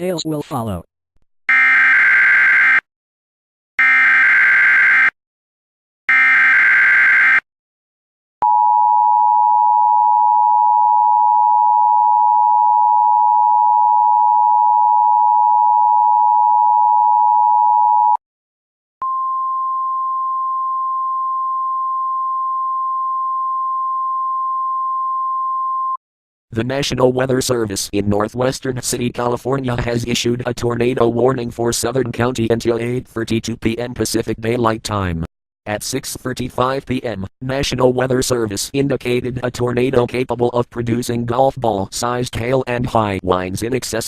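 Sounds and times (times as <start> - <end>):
steady warning alarm tone: 1.5 - 2.8, 3.8 - 5.2, 6.1 - 7.4.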